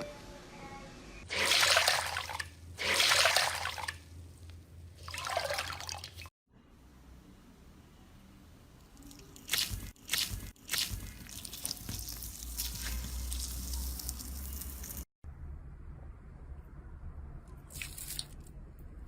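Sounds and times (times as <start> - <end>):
slime squishing by hand: 9.0 - 15.0
wet crackles and pops: 9.4 - 15.0.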